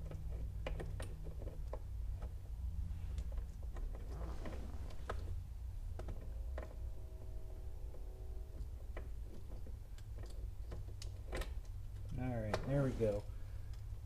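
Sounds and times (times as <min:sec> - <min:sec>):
small mechanical clicks and knocks: 0:00.0 - 0:14.0
steady low hum: 0:00.0 - 0:14.0
scraping rustle: 0:02.9 - 0:05.4.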